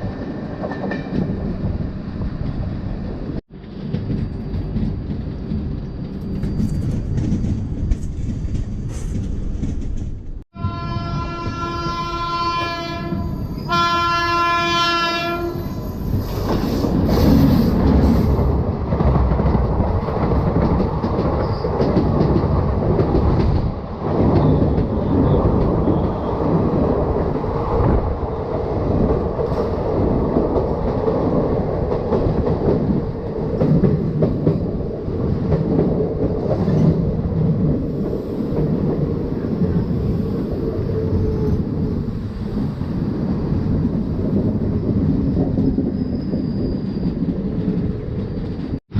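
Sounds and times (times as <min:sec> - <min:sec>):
train rumbling and clacking on rails: 0:00.0 - 0:48.9
locomotive horn blasts: 0:10.6 - 0:15.7.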